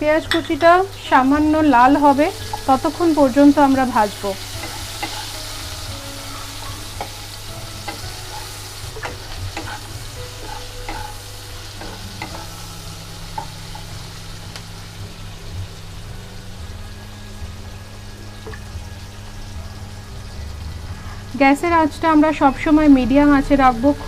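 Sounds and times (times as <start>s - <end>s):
onions sizzling in hot oil: 0.0s - 24.0s
spatula scraping a pan: 4.4s - 12.6s.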